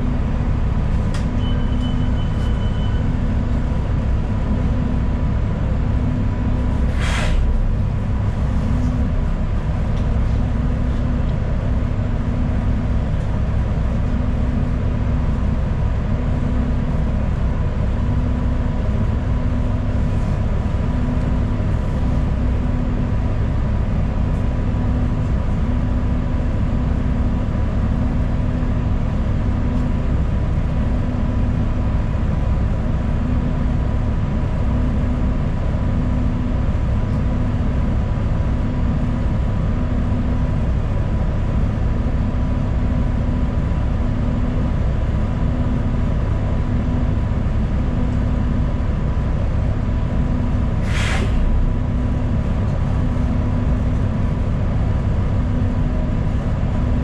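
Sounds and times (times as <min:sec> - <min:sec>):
bus engine and road rumble: 0:00.0 - 0:57.0.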